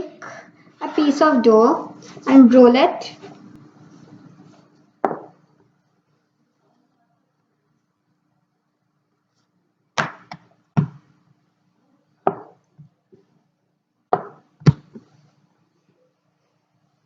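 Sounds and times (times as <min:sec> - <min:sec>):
rolling pin knocking on board: 0:05.0 - 0:05.4, 0:12.3 - 0:12.6, 0:14.1 - 0:15.0.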